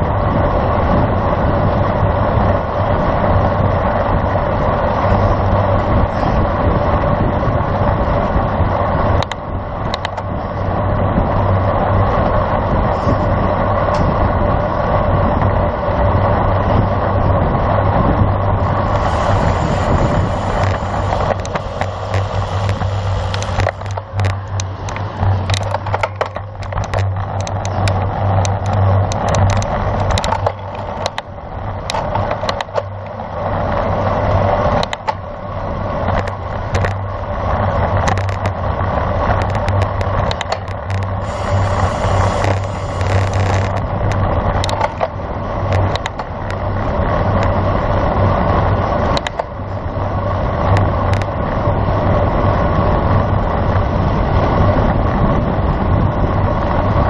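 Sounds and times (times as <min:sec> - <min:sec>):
road noise: 0:00.0 - 0:57.0
wind rushing over microphone: 0:00.0 - 0:57.0
rattling clicks and knocks: 0:18.8 - 0:31.2, 0:38.0 - 0:38.6.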